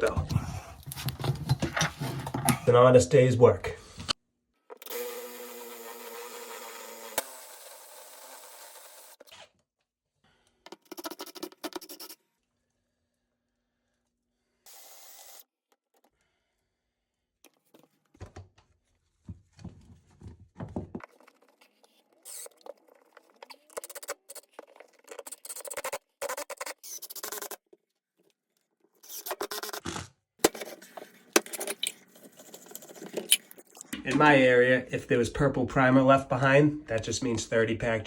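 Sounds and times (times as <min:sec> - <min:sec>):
scraping and rubbing by hand: 0:30.4 - 0:33.6.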